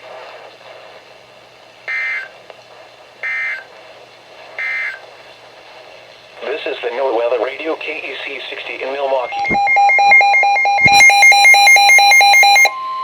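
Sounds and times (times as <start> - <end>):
digital data tone bursts: 9.2 - 12.7.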